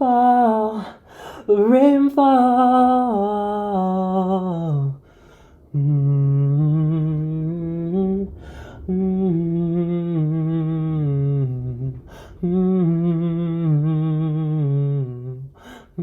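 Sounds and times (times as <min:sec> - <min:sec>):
quick breath: 0:00.8 - 0:01.5, 0:05.0 - 0:05.7, 0:08.3 - 0:08.9, 0:12.0 - 0:12.4, 0:15.6 - 0:16.0
person humming a slow melody: 0:05.7 - 0:16.0.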